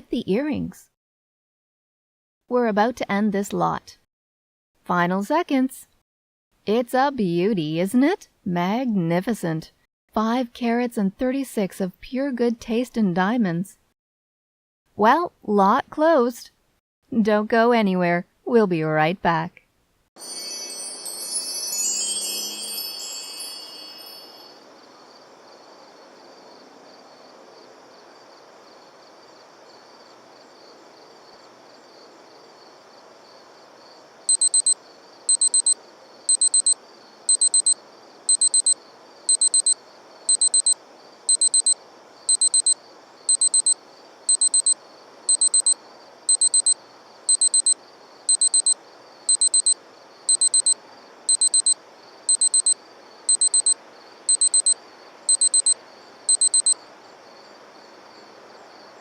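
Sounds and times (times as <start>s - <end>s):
chiming jingle: 20.2s - 24.6s
alarm clock beeping: 34.3s - 56.8s.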